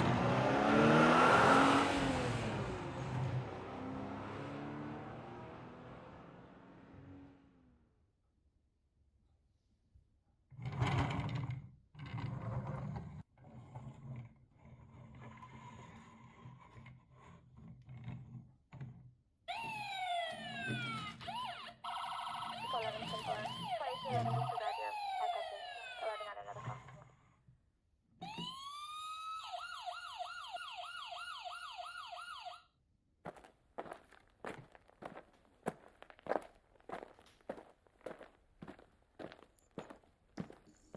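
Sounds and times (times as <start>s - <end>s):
electronic police siren: 19.5s - 26.8s, 28.2s - 32.7s.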